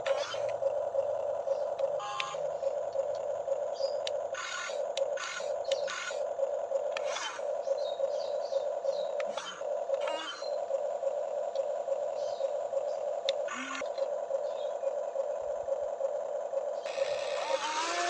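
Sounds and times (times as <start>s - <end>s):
small electric motor whining: 0.0s - 18.0s
scraping bursts: 4.3s - 6.3s, 6.9s - 7.5s.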